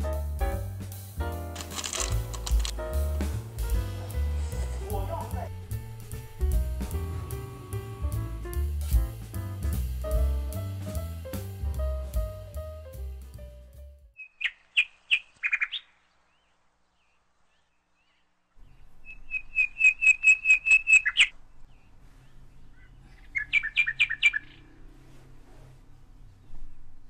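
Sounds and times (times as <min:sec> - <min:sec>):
bird chirping: 0:14.2 - 0:24.7.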